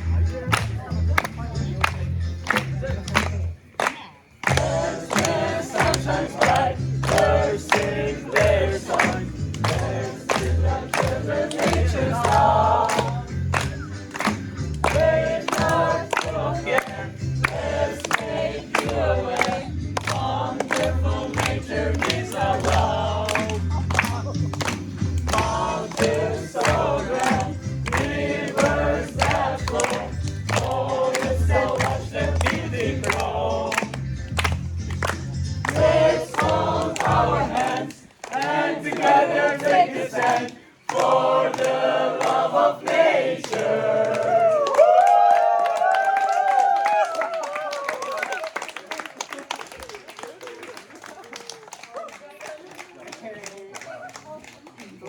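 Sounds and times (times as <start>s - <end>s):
voices singing together: 4.4s - 45.4s
music with steady beat: 4.5s - 37.8s.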